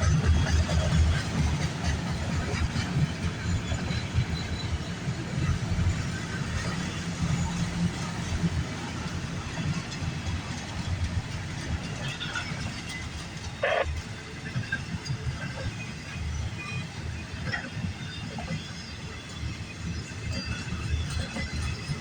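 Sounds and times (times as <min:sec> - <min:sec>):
freight train wheels rumbling on rail: 0:00.0 - 0:22.0.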